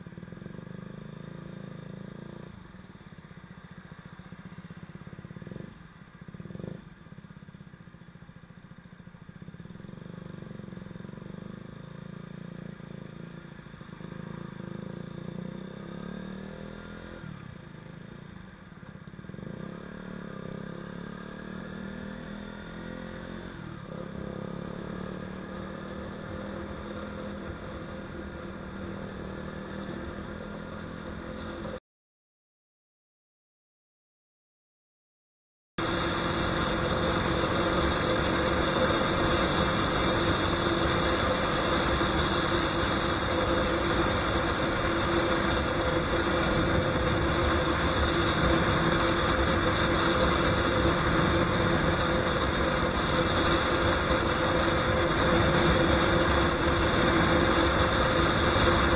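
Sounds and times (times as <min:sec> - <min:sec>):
motorcycle engine under load: 0:35.8 - 0:58.9.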